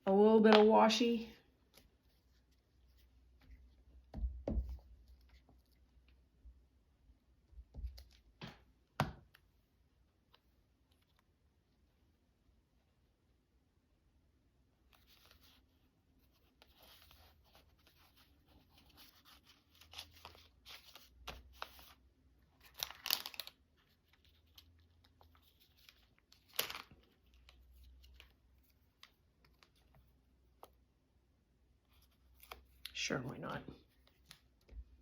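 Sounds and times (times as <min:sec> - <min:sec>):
paper rustling: 0:14.9 - 0:22.0, 0:22.6 - 0:30.7.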